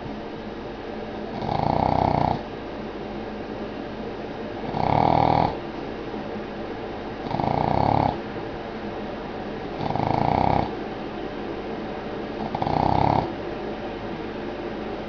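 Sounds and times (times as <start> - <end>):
dog snoring: 1.3 - 2.4, 4.6 - 5.6, 7.2 - 8.2, 9.8 - 10.8, 12.4 - 13.4.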